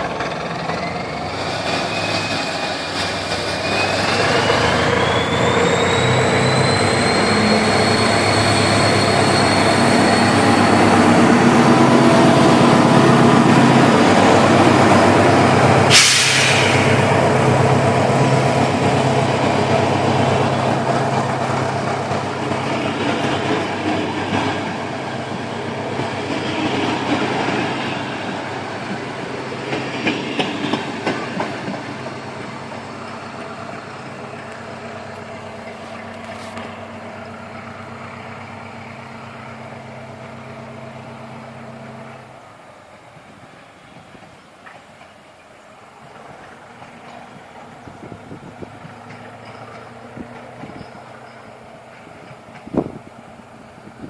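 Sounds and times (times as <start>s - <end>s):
diesel locomotive engine droning: 0.0s - 54.0s
air hiss: 15.9s - 17.2s
wheels clicking over rail joints: 17.6s - 38.6s, 43.2s - 54.0s.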